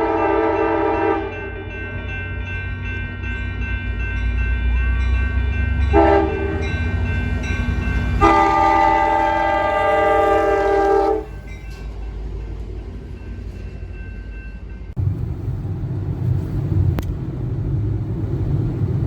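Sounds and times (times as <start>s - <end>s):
locomotive air horn: 0.0s - 1.6s, 5.9s - 6.7s, 8.2s - 11.4s
steady low rumble: 14.8s - 19.0s.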